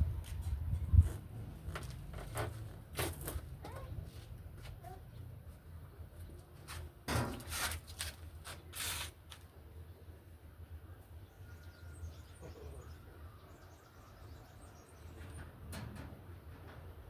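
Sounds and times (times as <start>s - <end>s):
scraping or rustling: 6.7s - 9.4s
faint bird chirps: 11.2s - 15.4s.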